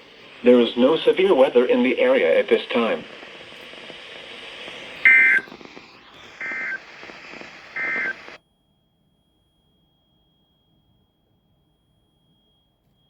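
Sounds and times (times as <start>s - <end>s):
broadcast static: 0.0s - 8.4s
warbling digital data tones: 0.2s - 8.4s.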